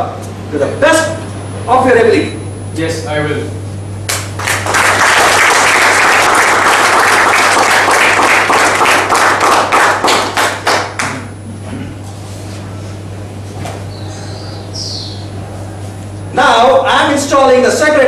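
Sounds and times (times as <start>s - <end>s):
audience applauding: 4.1s - 11.2s.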